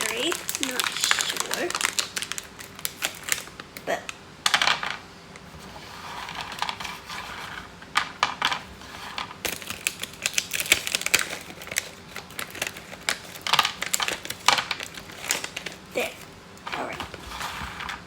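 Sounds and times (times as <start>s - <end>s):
dry cat treats rattling: 0.0s - 3.6s, 8.2s - 18.0s.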